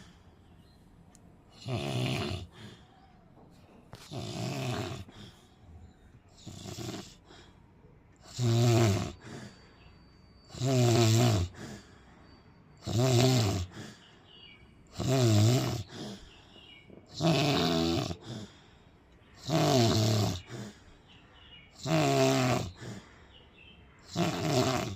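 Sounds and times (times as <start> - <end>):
person snoring: 1.6 - 2.9, 4.0 - 5.4, 6.4 - 7.3, 8.2 - 9.5, 10.5 - 11.8, 12.8 - 13.9, 15.0 - 16.2, 17.2 - 18.5, 19.4 - 20.7, 21.8 - 23.0, 24.1 - 24.9.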